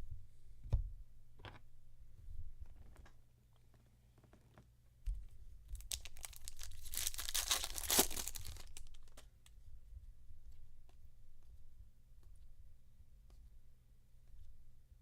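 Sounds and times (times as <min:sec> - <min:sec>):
wrapper crinkly tearing: 0:05.8 - 0:09.2.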